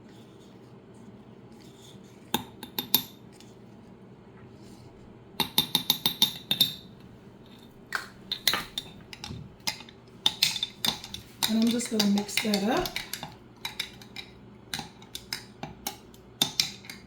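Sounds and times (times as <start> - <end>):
metal spoon clinking on container: 8.3 - 17.0.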